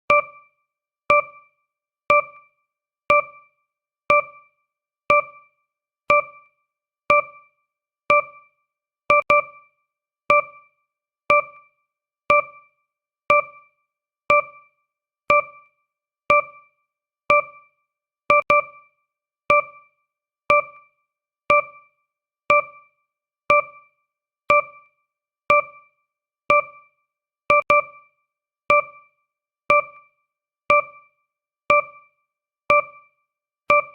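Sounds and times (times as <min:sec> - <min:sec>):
electronic piano-like timer ticks: 0:01.1 - 0:01.5, 0:02.1 - 0:02.5, 0:03.1 - 0:03.5, 0:04.1 - 0:04.5, 0:05.1 - 0:05.5, 0:06.1 - 0:06.5, 0:07.1 - 0:07.5, 0:08.1 - 0:08.5, 0:09.1 - 0:09.6, 0:10.3 - 0:10.7, 0:11.3 - 0:11.7, 0:12.3 - 0:12.7, 0:13.3 - 0:13.7, 0:14.3 - 0:14.7, 0:15.3 - 0:15.7, 0:16.3 - 0:16.7, 0:17.3 - 0:17.7, 0:18.3 - 0:18.8, 0:19.5 - 0:19.9, 0:20.5 - 0:20.9, 0:21.5 - 0:21.9, 0:22.5 - 0:22.9, 0:23.5 - 0:23.9, 0:24.5 - 0:24.9, 0:25.5 - 0:25.9, 0:26.5 - 0:26.9, 0:27.5 - 0:28.0, 0:28.7 - 0:29.1, 0:29.7 - 0:30.1, 0:30.7 - 0:32.1, 0:32.7 - 0:33.1, 0:33.7 - 0:33.9.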